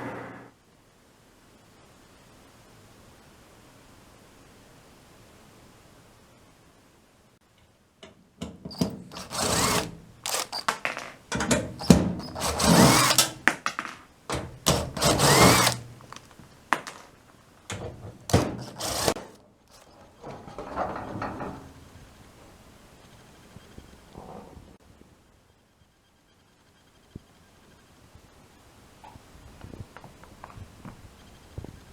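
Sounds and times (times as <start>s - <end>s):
clicks and knocks: 7.5s - 21.9s
power drill-driver bursts: 8.6s - 17.1s, 18.1s - 20.0s.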